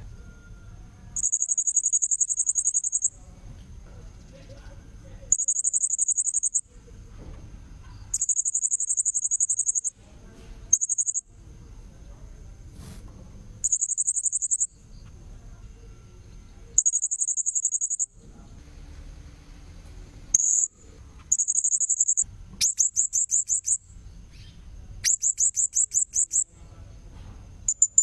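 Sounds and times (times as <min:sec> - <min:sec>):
thin steady high tone: 0:00.0 - 0:03.2, 0:04.3 - 0:06.8, 0:08.1 - 0:10.0, 0:10.7 - 0:11.3, 0:13.6 - 0:23.9
low background rumble: 0:18.2 - 0:28.0.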